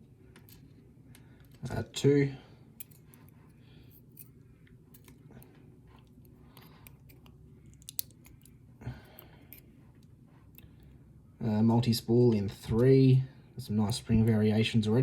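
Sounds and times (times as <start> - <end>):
small lock pin clicks: 6.8 - 8.6.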